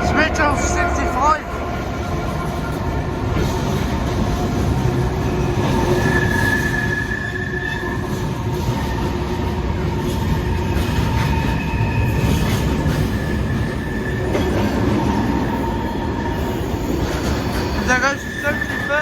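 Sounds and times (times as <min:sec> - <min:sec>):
train wheels rumbling on track: 0:00.0 - 0:19.0
high wheel squealing: 0:16.4 - 0:19.0.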